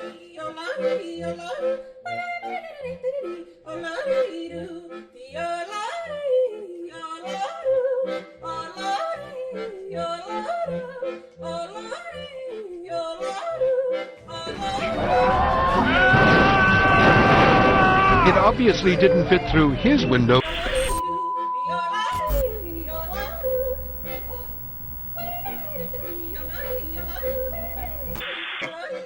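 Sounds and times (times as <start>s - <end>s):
loud hiss with steady tones: 20.4s - 21.0s, 22.2s - 28.3s.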